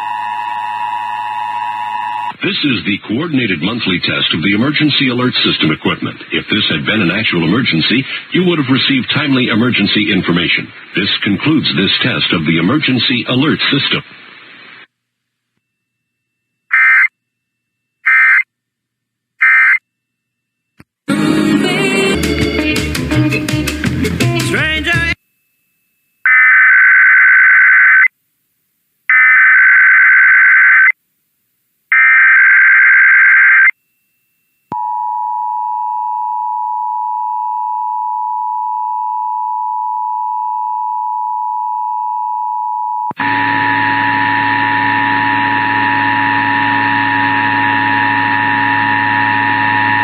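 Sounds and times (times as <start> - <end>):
loud humming noise: 43.2 - 50.0
two-tone attention signal: 43.2 - 50.0.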